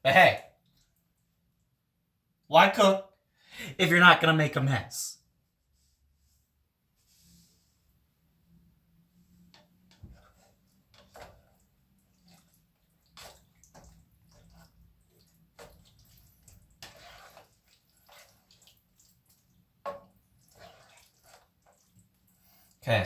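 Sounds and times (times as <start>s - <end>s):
meat mixture bubbling in a pan: 9.4s - 22.8s.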